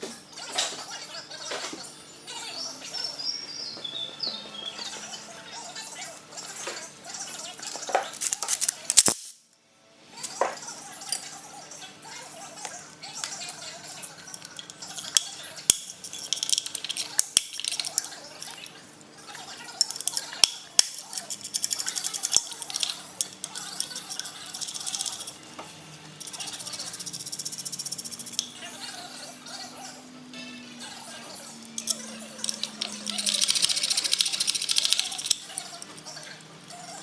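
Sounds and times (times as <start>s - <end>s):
metal tools clinking on engine parts: 14.3s - 18.7s, 19.8s - 25.4s, 31.6s - 36.0s
sharp clicks: 31.7s - 35.6s.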